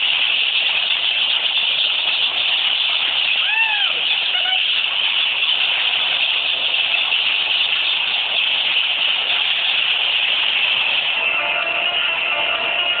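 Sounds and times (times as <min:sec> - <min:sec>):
washing machine spinning: 0:00.0 - 0:13.0
music: 0:11.0 - 0:13.0.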